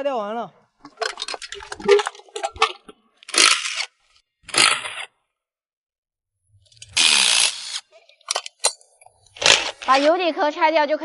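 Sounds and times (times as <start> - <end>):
metal parts clinking: 6.7 - 10.0.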